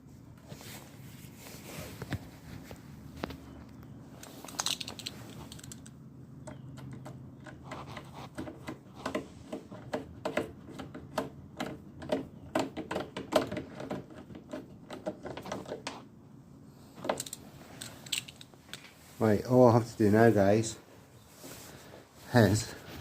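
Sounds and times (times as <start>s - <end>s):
clicks and knocks of small parts: 4.2s - 16.0s, 17.0s - 19.0s.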